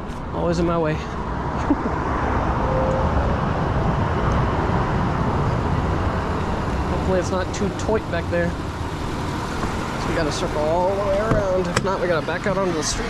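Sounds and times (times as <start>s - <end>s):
tyre and road noise: 0.0s - 13.0s
vehicle engine running: 3.1s - 13.0s.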